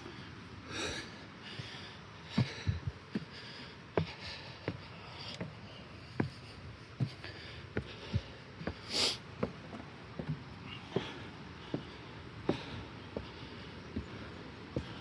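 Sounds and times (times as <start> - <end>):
breathy hiss: 0.0 - 9.5
hiker footsteps: 0.8 - 15.0.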